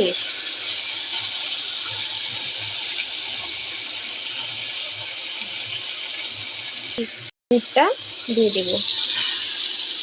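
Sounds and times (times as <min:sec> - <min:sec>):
spice paste sizzling in oil: 0:00.0 - 0:10.0.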